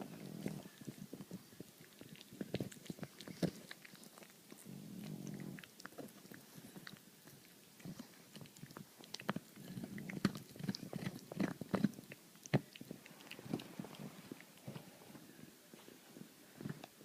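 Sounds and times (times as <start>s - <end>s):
dog snoring: 4.6s - 5.7s.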